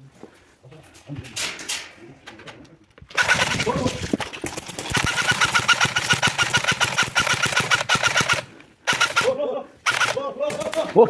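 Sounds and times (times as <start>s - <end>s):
airsoft gun full-auto rattle: 3.1s - 10.9s.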